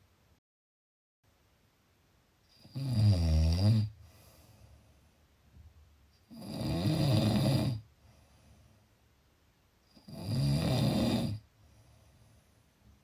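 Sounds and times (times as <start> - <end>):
person snoring: 2.6 - 4.0, 6.3 - 7.8, 10.0 - 11.4.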